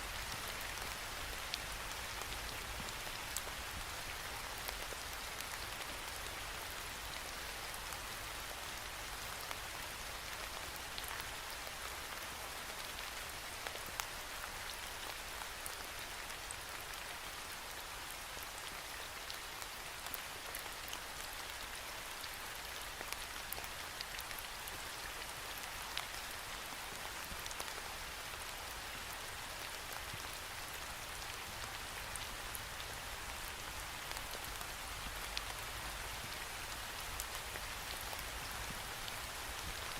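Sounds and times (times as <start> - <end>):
rain on a window pane: 0.0 - 39.9.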